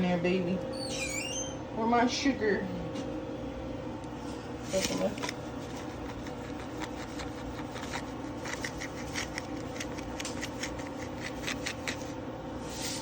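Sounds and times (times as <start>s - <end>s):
steady low hum: 0.0s - 13.0s
spoon scratching in cup: 4.7s - 13.0s.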